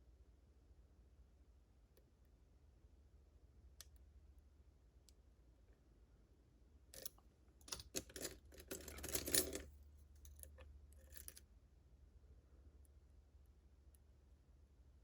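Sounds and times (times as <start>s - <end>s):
lock picks clicking and scraping: 7.0s - 11.4s.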